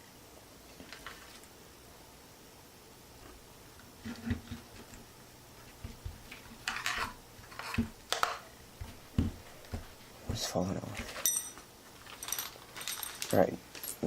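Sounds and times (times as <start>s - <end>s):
small knocks and taps: 5.8s - 10.0s.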